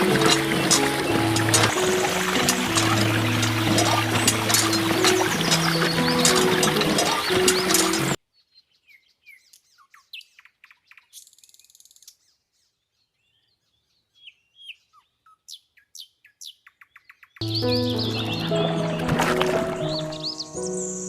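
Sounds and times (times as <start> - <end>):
birds chirping and whistling: 0.0 - 8.2, 17.4 - 21.0
music: 0.0 - 8.2, 17.4 - 21.0.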